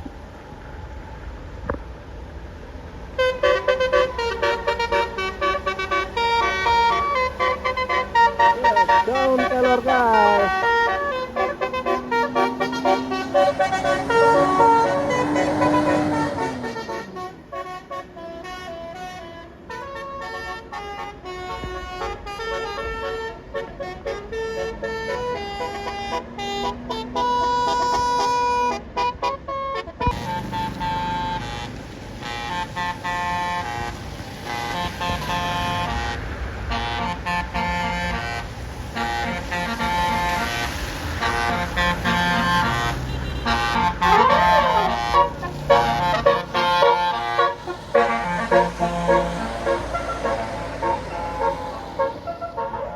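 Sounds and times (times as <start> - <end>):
faint engine running: 3.2 - 17.8, 30.1 - 52.8
multi-tone horn playing melody: 3.2 - 52.9.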